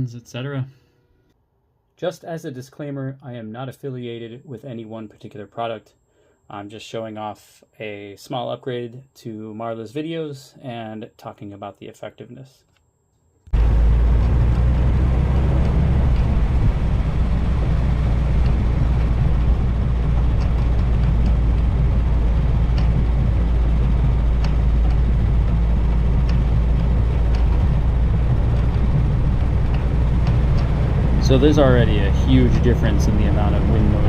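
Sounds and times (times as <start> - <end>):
jeep engine running: 13.5 - 34.0
wind rumble: 13.5 - 34.0.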